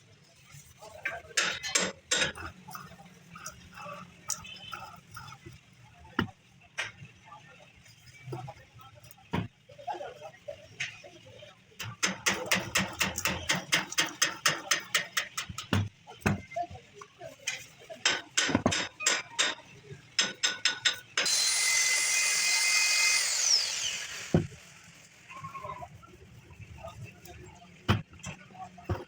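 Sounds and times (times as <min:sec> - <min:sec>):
power tool high-pitched hiss: 0:21.2 - 0:24.9.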